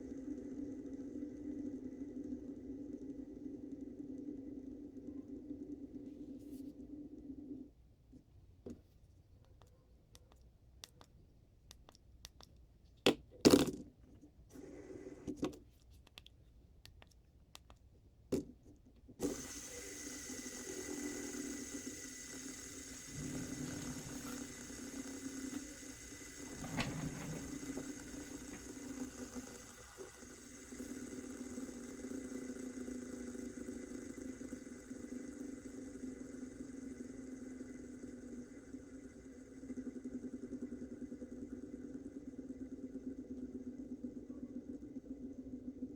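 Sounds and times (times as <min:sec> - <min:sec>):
steady mechanical hum: 0:00.0 - 0:12.9, 0:13.9 - 0:45.9
light clicks and taps: 0:15.4 - 0:17.9.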